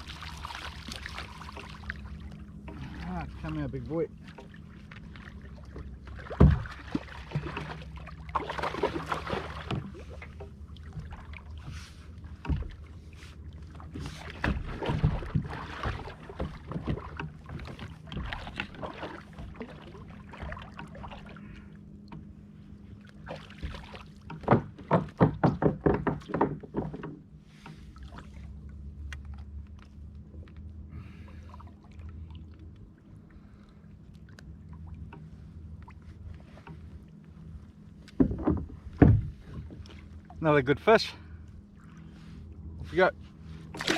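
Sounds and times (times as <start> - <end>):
steady low hum: 0.0 - 25.4, 26.5 - 43.9
knocks and thumps on kayak: 5.8 - 11.2, 12.3 - 12.8, 13.9 - 19.8, 23.3 - 27.9, 38.1 - 40.0.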